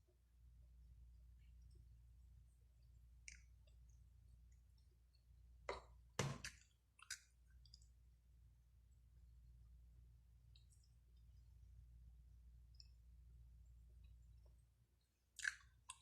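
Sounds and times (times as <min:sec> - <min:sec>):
faint low hum: 0:00.0 - 0:16.0
mouth clicks and smacks chewing: 0:03.2 - 0:04.9, 0:05.8 - 0:08.0, 0:15.3 - 0:16.0.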